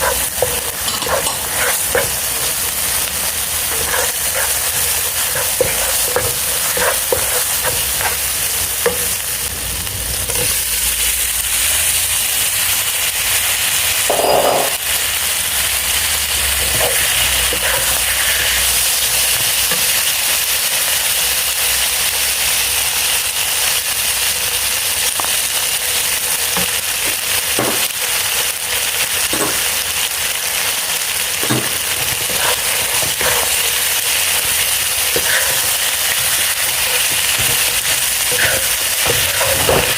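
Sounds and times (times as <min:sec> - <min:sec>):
utensil clicking and scraping pan: 0:00.0 - 0:09.2, 0:16.7 - 0:18.5, 0:31.4 - 0:39.9
food sizzling in hot oil: 0:00.0 - 0:39.9.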